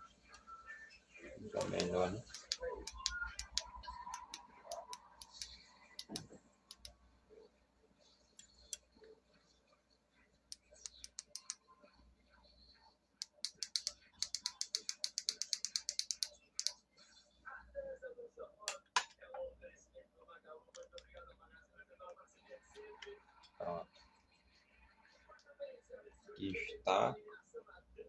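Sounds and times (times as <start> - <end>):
fast ratcheting clicks: 13.2 - 16.7.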